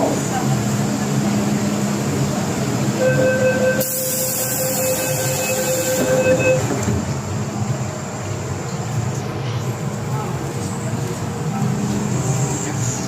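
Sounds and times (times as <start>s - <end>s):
train running noise: 0.0s - 13.0s
electronic warning tone: 3.0s - 6.6s.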